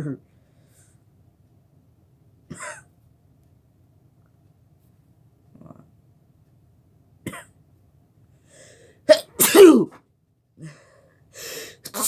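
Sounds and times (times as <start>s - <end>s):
person sneezing: 9.1s - 10.0s, 11.7s - 12.0s.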